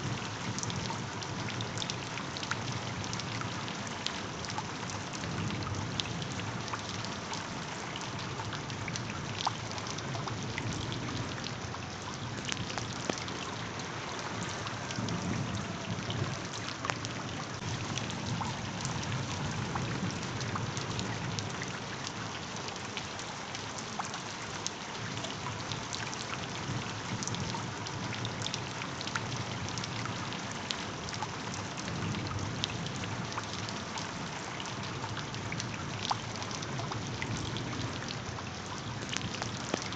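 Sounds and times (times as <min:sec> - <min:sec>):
steady rain: 0:00.0 - 0:39.9
raindrops ticking sharply: 0:08.4 - 0:23.1, 0:31.9 - 0:39.9.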